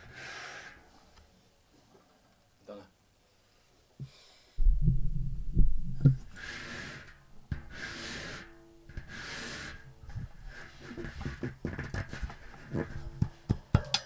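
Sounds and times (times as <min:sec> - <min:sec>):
close-up rumble: 0:04.6 - 0:06.6.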